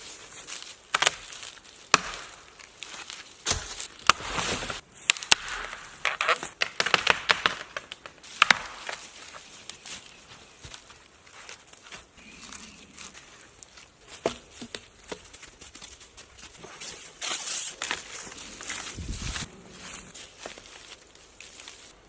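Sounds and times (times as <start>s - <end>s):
branches rustling and crackling: 0.0s - 22.0s.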